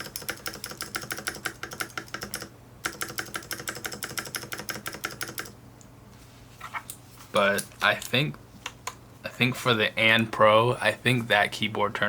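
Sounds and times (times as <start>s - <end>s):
fast clicky keyboard typing: 0.0s - 5.5s.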